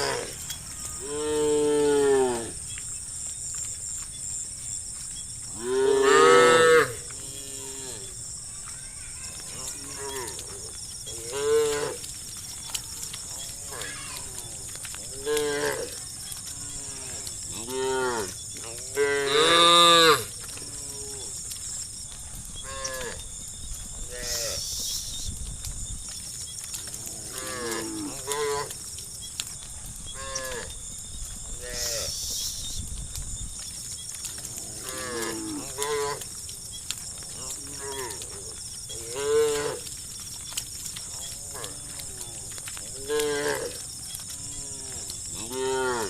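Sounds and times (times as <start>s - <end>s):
steady high-pitched hiss: 0.0s - 46.0s
cattle mooing: 5.6s - 8.1s.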